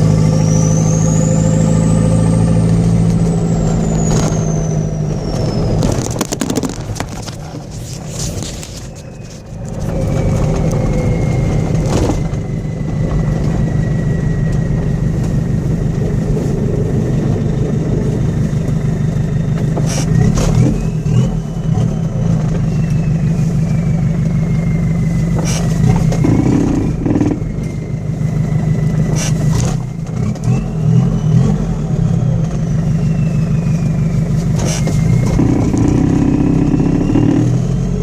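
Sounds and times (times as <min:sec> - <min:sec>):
diesel engine low rumble: 0:00.0 - 0:38.0
turbo whistle: 0:00.2 - 0:07.1.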